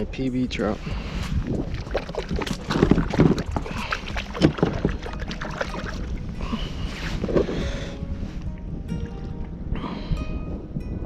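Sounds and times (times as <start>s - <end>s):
wind on microphone: 0.0s - 11.0s.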